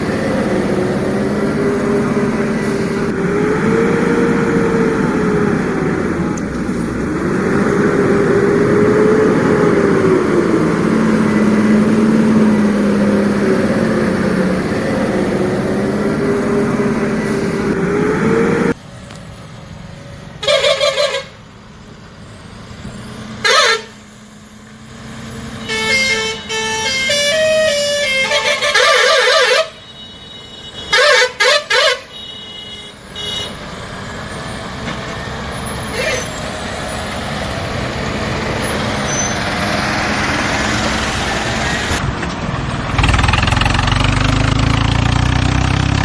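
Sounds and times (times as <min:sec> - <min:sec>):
toy horn toots: 0:20.4 - 0:21.4, 0:23.4 - 0:24.0, 0:25.6 - 0:33.6.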